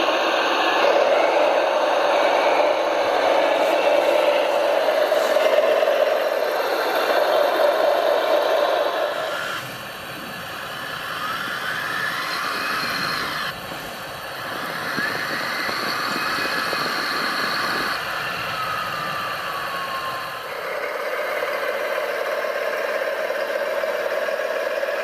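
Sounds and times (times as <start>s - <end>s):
electric motors whining: 0.0s - 25.0s
mechanical rattle: 0.4s - 18.1s.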